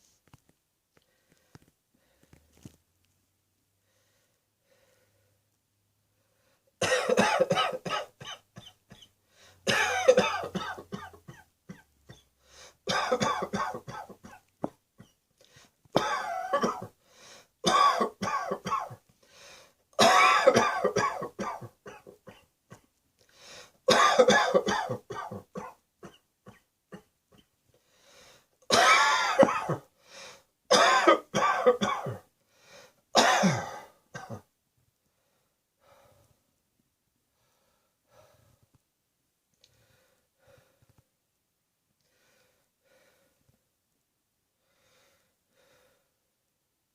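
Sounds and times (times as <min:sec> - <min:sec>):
person coughing: 0:06.8 - 0:09.1, 0:09.7 - 0:12.3, 0:12.9 - 0:15.2, 0:16.0 - 0:17.0, 0:17.6 - 0:19.0, 0:20.0 - 0:22.9, 0:23.9 - 0:27.5, 0:28.7 - 0:29.9, 0:30.7 - 0:32.3, 0:33.2 - 0:34.5.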